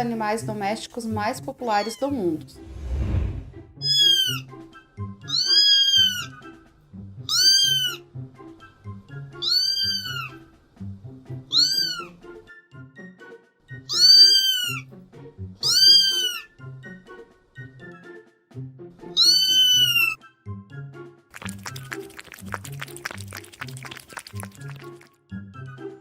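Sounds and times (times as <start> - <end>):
background music: 0.0 - 26.0
cat meowing: 3.8 - 4.4, 5.3 - 6.4, 7.3 - 8.0, 9.4 - 10.4, 11.5 - 12.2, 13.9 - 14.8, 15.6 - 16.5, 19.1 - 20.2.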